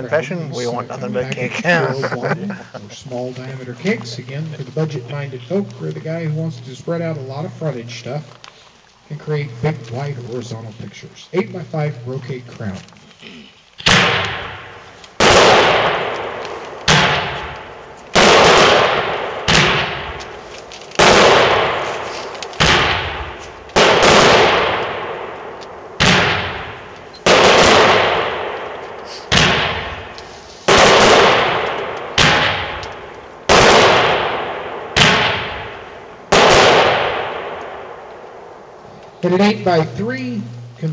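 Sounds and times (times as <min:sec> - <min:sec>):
firework cake shots: 0:26.0 - 0:35.7.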